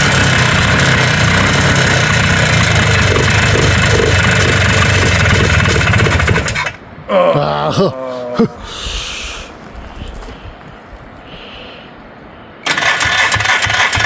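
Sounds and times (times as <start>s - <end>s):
two-stroke engine running rough: 0.0s - 6.8s, 12.7s - 14.0s.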